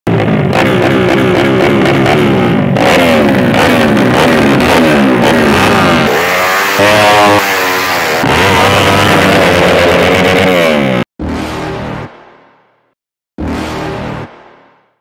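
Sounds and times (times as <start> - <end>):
motorcycle engines revving: 0.1 - 11.1.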